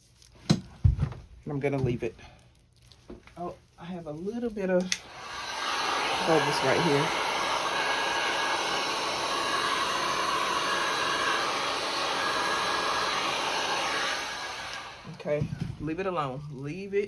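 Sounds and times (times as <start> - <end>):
heat gun blowing: 4.9 - 15.2.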